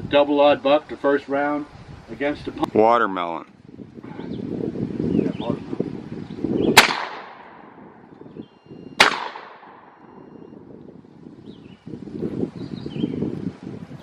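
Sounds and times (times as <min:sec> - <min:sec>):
shotgun blasts with echo: 0:06.8 - 0:07.8, 0:09.0 - 0:10.0.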